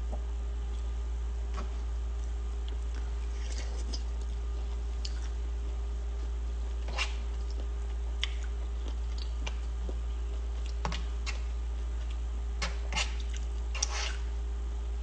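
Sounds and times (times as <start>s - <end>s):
low electrical hum: 0.0s - 15.0s
chewing mouth noises: 2.2s - 5.4s, 6.8s - 12.2s, 13.0s - 14.2s.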